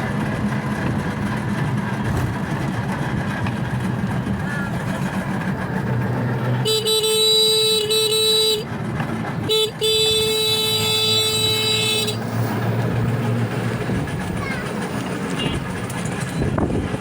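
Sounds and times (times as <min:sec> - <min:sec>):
low engine rumble: 0:00.0 - 0:17.0
vehicle horn blasts: 0:06.6 - 0:08.7, 0:09.4 - 0:12.4, 0:15.4 - 0:15.7.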